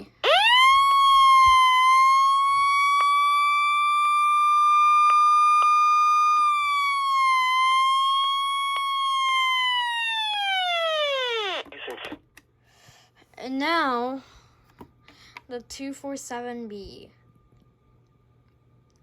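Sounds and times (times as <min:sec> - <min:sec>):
siren wail from loudspeaker: 0:00.2 - 0:11.7.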